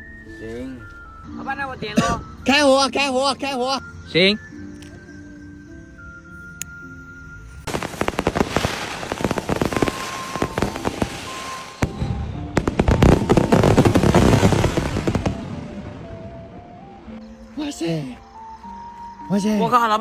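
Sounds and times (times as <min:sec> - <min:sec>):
fireworks crackling: 0:07.6 - 0:16.8.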